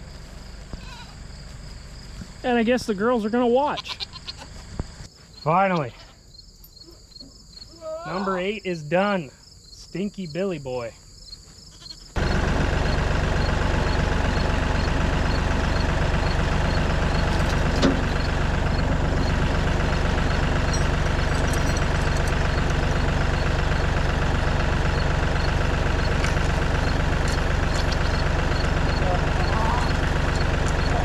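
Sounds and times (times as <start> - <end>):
tractor diesel engine idling: 12.2 - 31.0.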